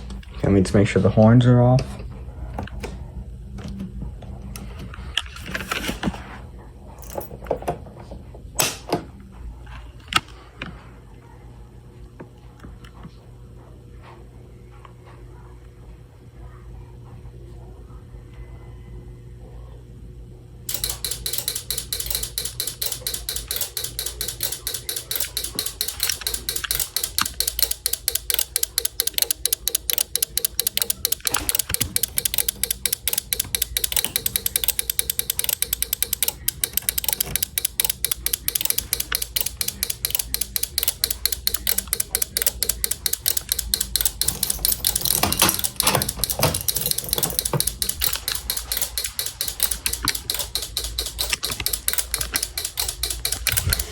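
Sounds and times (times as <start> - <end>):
rapid even clicking: 20.7 - 53.9.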